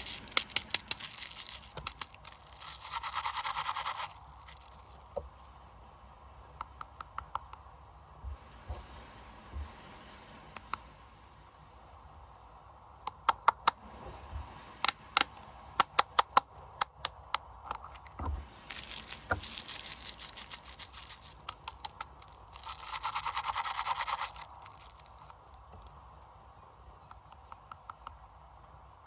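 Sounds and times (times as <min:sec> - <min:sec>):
wrapper ripping: 0:00.0 - 0:03.2, 0:18.7 - 0:25.9
plastic packaging crinkling: 0:00.0 - 0:05.2, 0:17.8 - 0:25.9.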